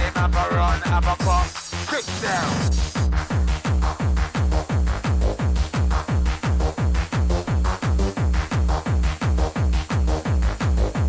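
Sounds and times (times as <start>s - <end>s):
fast kick drum: 0.0s - 1.8s, 2.5s - 11.0s.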